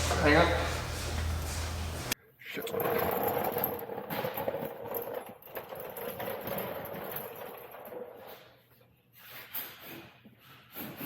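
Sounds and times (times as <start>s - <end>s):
metal brake line scraping and clinking: 0.0s - 2.2s.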